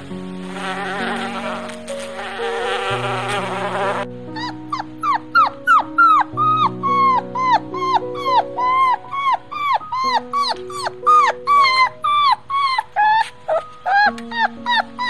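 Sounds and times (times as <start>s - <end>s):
background music with held chords: 0.0s - 15.0s
dog yelping: 3.9s - 15.0s.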